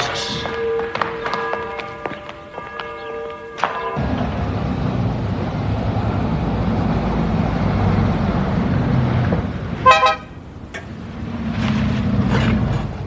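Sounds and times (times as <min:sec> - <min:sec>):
vehicle engine running: 0:04.0 - 0:13.0.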